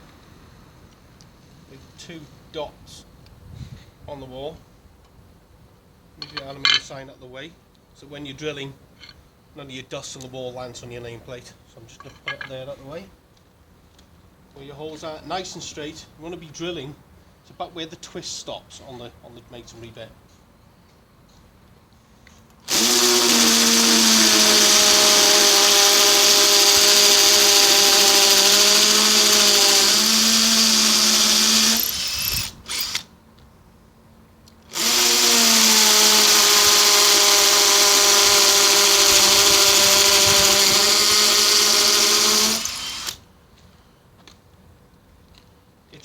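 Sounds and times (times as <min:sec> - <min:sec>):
hammer drill drilling into brick: 0:22.7 - 0:33.1, 0:34.7 - 0:43.2.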